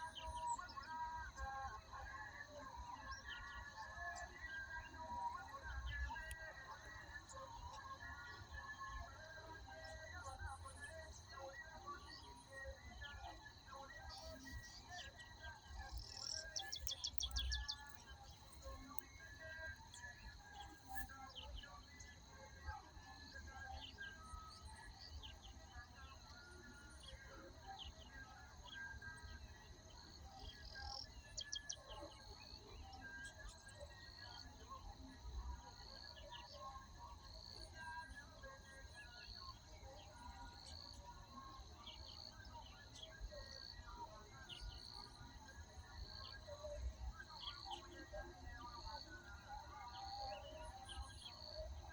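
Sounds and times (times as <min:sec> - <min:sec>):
steady high insect drone: 0:00.0 - 0:51.9
wild birds chirping and calling: 0:11.0 - 0:22.3.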